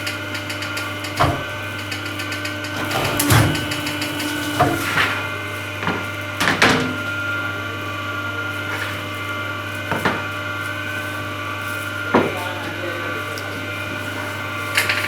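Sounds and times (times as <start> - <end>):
hydraulic press motor humming: 0.0 - 7.6.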